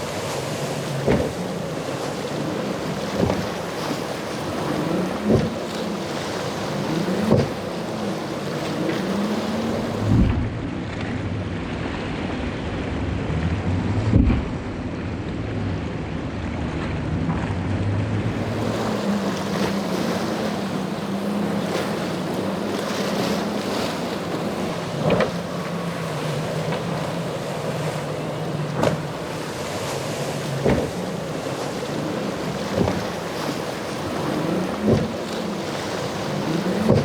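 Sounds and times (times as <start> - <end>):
boat engines droning: 0.0 - 37.0
waves washing: 0.0 - 37.0
wind buffeting microphone: 0.0 - 37.0
short thumps: 0.9 - 1.7, 4.6 - 5.7, 6.9 - 7.8, 24.1 - 31.8, 34.0 - 35.3, 36.6 - 37.0.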